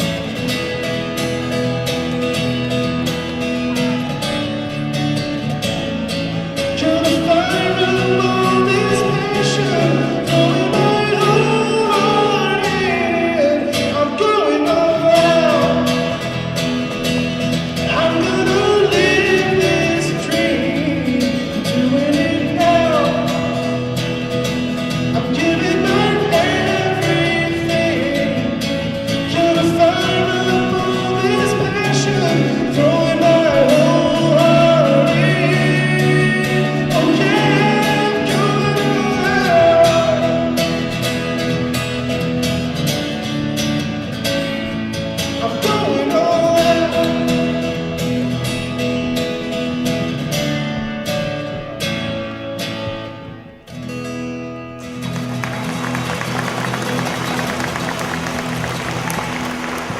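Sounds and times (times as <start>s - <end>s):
band backing: 0.0s - 59.9s
strummed acoustic guitar: 0.0s - 59.9s
man singing: 6.5s - 16.6s, 17.6s - 41.5s, 45.2s - 48.4s.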